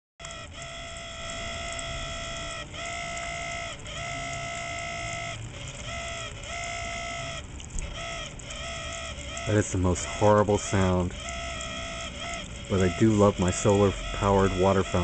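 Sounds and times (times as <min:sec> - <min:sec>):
fountain pump squealing whine: 0:00.2 - 0:15.0.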